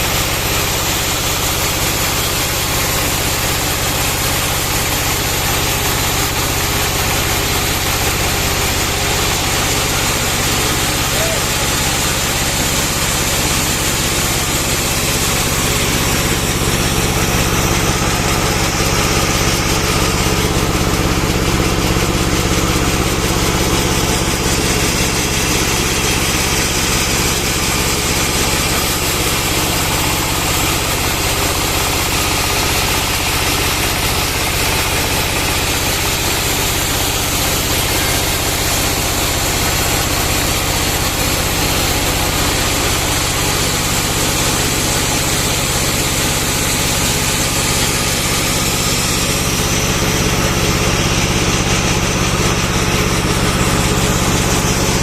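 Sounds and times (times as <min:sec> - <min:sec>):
bandsaw sawmill running: 0:00.0 - 0:55.0
engine hum: 0:04.2 - 0:55.0.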